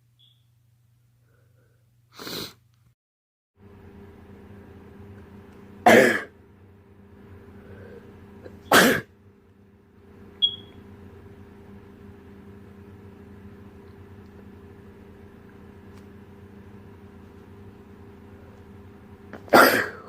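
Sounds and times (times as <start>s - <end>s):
person sneezing: 2.1s - 2.6s, 5.9s - 6.3s, 8.6s - 9.1s, 19.4s - 20.0s
steady hum: 3.6s - 20.0s.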